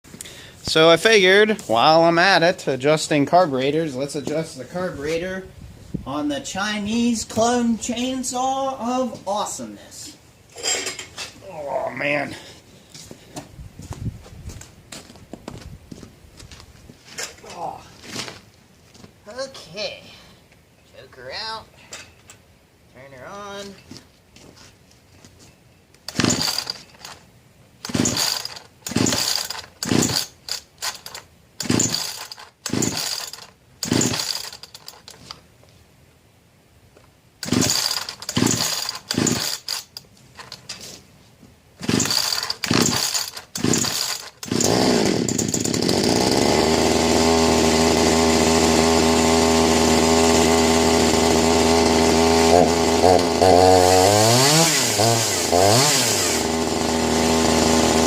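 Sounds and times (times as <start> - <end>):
chainsaw engine running: 26.1 - 27.1, 27.8 - 35.0, 37.4 - 39.9, 41.8 - 58.0
chainsaw starter cord pulls: 26.1 - 27.2, 27.8 - 35.4, 37.4 - 40.7, 41.8 - 58.0.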